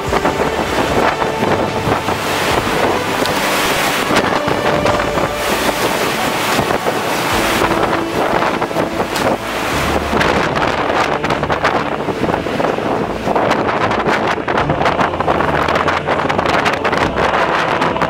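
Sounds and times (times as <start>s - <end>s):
strong wind on microphone: 0.0s - 18.0s.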